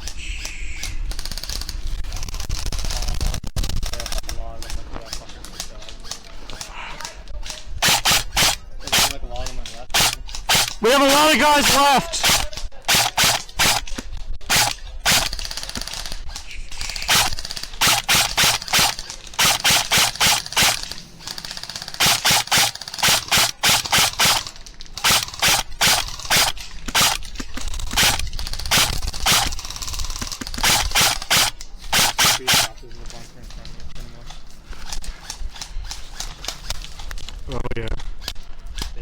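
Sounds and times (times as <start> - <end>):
airsoft rifle shots: 7.4 - 32.8.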